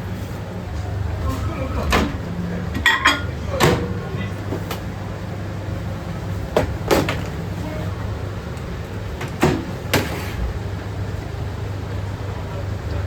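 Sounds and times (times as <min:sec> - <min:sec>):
steady low hum: 0:00.0 - 0:09.2
cooking utensils clattering: 0:01.2 - 0:03.9.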